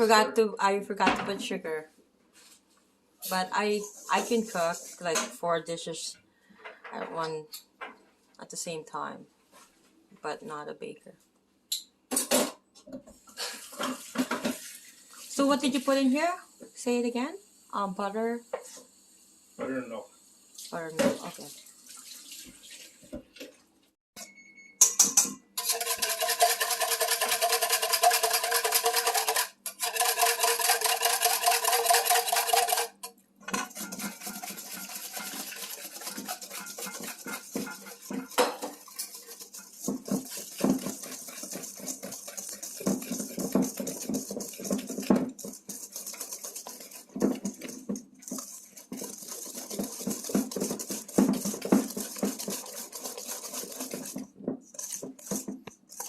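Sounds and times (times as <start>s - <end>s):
utensils clinking on bowl: 24.2s - 54.2s
electric kitchen motor: 25.6s - 33.1s.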